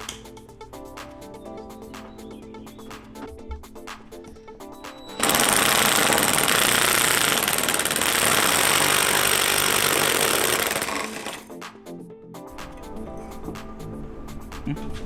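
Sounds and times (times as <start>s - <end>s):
background music: 0.0s - 15.0s
impact wrench hammering: 5.1s - 11.5s.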